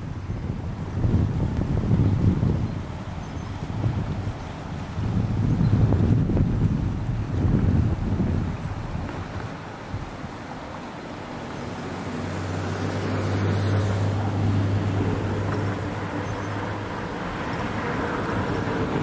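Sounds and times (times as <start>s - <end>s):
wind on microphone: 0.0s - 19.0s
low engine-like hum: 8.8s - 19.0s.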